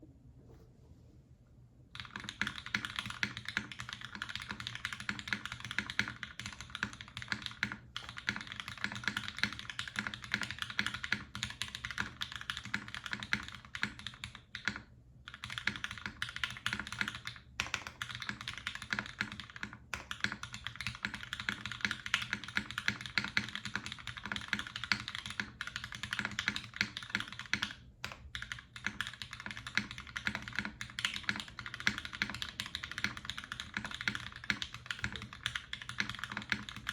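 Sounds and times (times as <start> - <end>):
mechanical keyboard typing: 2.0 - 36.9.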